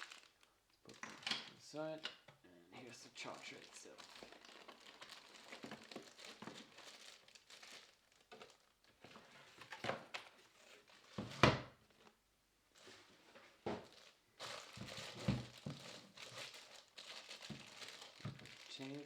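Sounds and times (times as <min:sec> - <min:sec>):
plastic packaging crinkling: 0:00.0 - 0:01.1, 0:03.2 - 0:09.1, 0:10.4 - 0:11.2, 0:12.8 - 0:19.0
loud plastic crunch: 0:03.2 - 0:08.7, 0:13.7 - 0:19.0.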